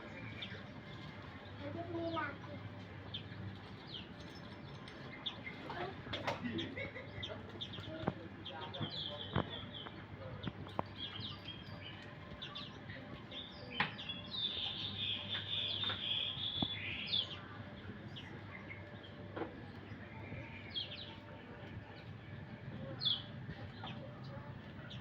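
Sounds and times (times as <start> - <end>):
songbirds chirping and twittering: 0.0 - 25.0
bird trilling song: 10.8 - 19.2, 22.9 - 24.0.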